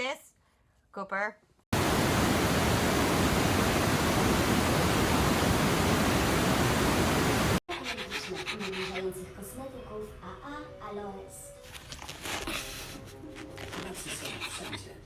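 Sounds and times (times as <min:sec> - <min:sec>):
static hiss: 0:01.8 - 0:07.6
music: 0:08.6 - 0:15.0.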